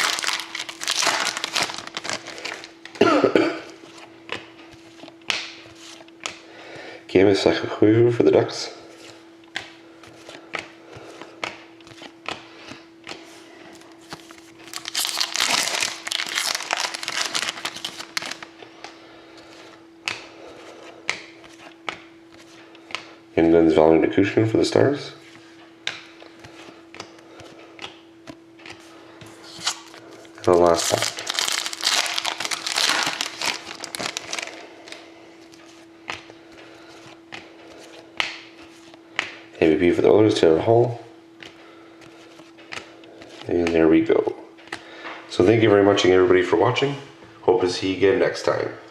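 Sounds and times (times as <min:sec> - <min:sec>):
foil wrapper tearing and crinkling: 0:00.0 - 0:02.8, 0:14.6 - 0:18.5, 0:29.5 - 0:35.0
faint steady hum: 0:00.0 - 0:48.9.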